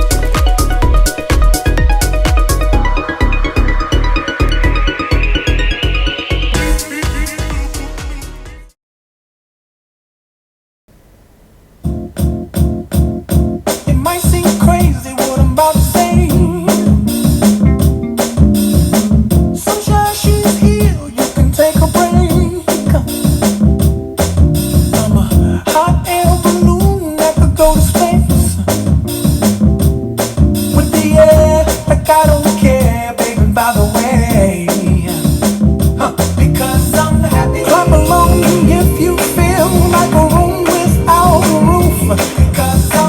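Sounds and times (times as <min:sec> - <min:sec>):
bass line: 0:00.0 - 0:07.9, 0:11.8 - 0:43.0
drum beat: 0:11.8 - 0:43.0
melody: 0:16.6 - 0:19.7, 0:36.6 - 0:42.9.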